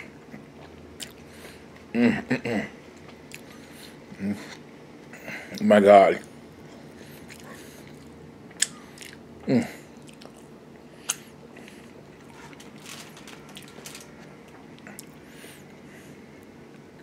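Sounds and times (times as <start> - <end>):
chewing and mouth sounds: 0.2 - 1.9, 3.0 - 4.6, 7.0 - 9.3, 10.0 - 12.7
person humming mm: 9.4 - 9.9.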